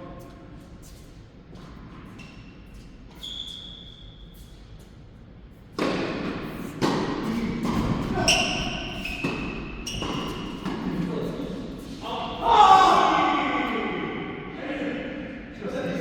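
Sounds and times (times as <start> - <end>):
shoe squeaks on court: 2.1 - 4.6, 8.2 - 10.7.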